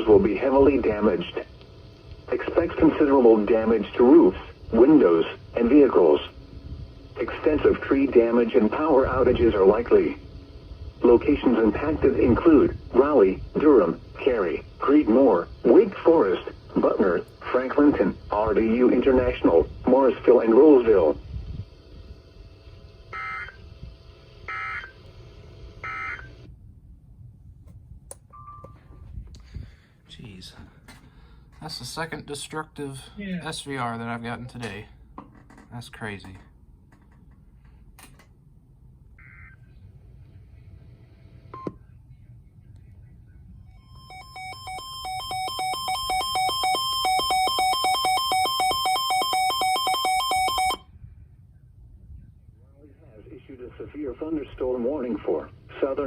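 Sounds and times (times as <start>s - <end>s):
two-pitch electronic alarm beeping: 23.1s - 23.6s, 24.5s - 25.0s, 25.8s - 26.3s, 43.7s - 50.9s
screeching digital data tones: 43.7s - 50.8s.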